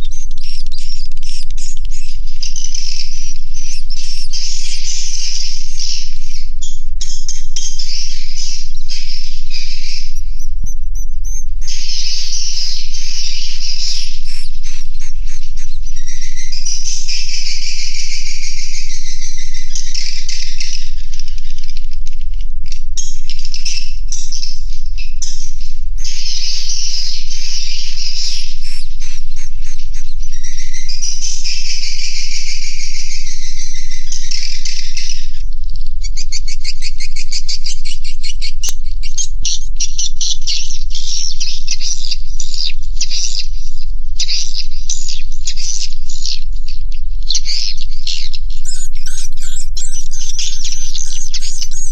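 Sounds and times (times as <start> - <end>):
swiftlets chirping and twittering: 0.0 - 20.8, 25.2 - 35.1, 47.3 - 51.9
buzzing bird chatter: 0.0 - 21.7, 23.0 - 35.2, 47.3 - 51.9
swiftlets chirping: 10.4 - 16.5, 26.0 - 30.9.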